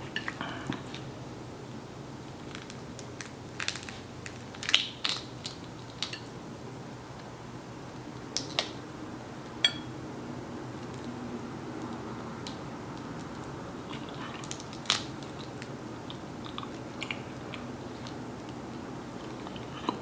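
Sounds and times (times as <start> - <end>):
chewing sounds: 13.1 - 20.0.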